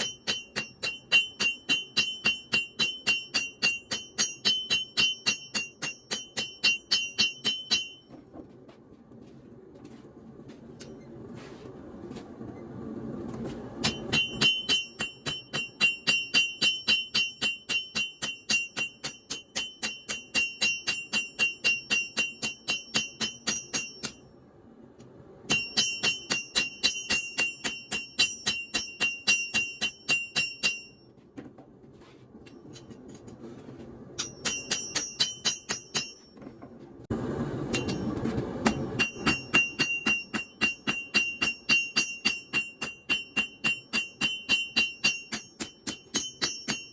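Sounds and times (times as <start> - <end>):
hammer ringing on steel anvil: 0.0 - 8.3, 13.8 - 24.4, 25.5 - 31.1, 34.2 - 36.5, 37.7 - 46.9.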